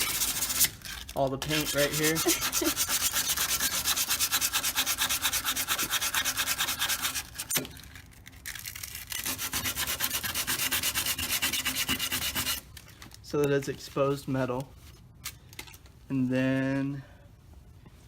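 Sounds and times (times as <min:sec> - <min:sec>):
sandpaper rubbing on metal: 0:00.0 - 0:07.5, 0:09.1 - 0:12.7.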